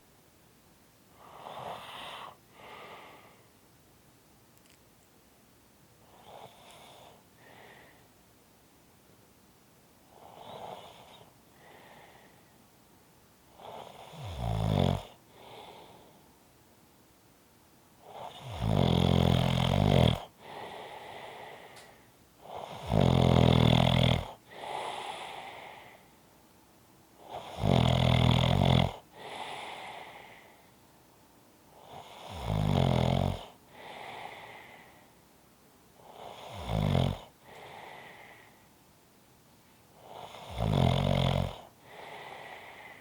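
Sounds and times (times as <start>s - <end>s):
quiet breath: 1.1s - 3.7s, 6.0s - 8.4s, 9.9s - 12.8s, 15.0s - 16.6s, 20.1s - 22.9s, 24.2s - 26.3s, 28.8s - 32.3s, 33.3s - 39.0s, 41.4s - 43.0s
person snoring: 13.6s - 16.2s, 18.1s - 21.9s, 22.5s - 26.0s, 27.3s - 30.5s, 31.8s - 35.0s, 36.0s - 38.6s, 40.0s - 43.0s.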